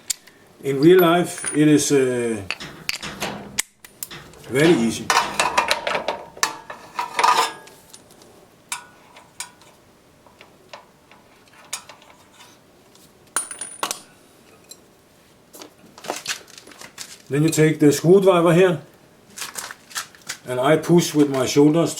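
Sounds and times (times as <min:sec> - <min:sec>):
spanners clinking on metal: 0:00.8 - 0:08.1.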